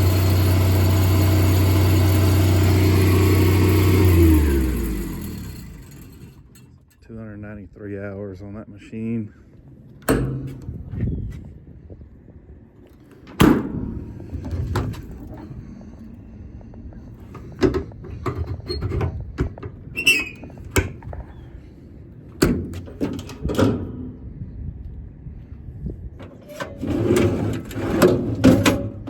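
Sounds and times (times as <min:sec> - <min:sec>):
steady low rumble: 0:07.0 - 0:18.3, 0:19.0 - 0:26.2
metal doors and latches clunking: 0:10.0 - 0:10.8, 0:22.4 - 0:24.2, 0:26.2 - 0:29.0.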